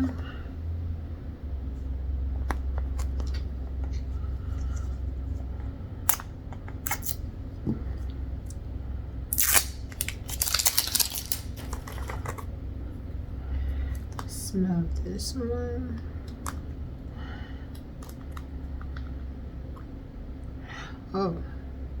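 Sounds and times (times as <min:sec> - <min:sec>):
low hum: 0:00.0 - 0:22.0
packaging rustling and tearing: 0:09.3 - 0:12.4.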